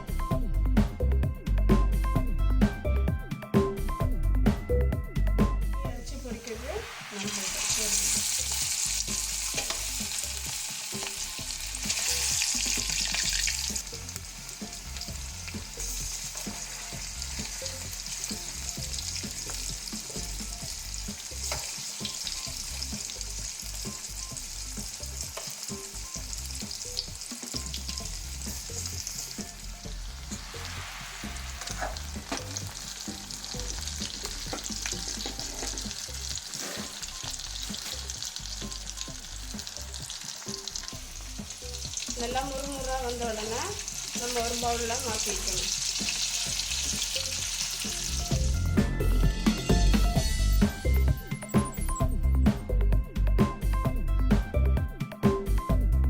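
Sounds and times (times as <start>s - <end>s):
chicken sizzling in hot oil: 5.8s - 51.9s.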